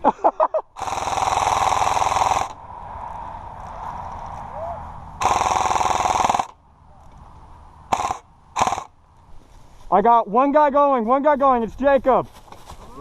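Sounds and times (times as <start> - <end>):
airsoft gun firing bursts: 0.8 - 2.5, 5.2 - 6.6, 7.9 - 8.9.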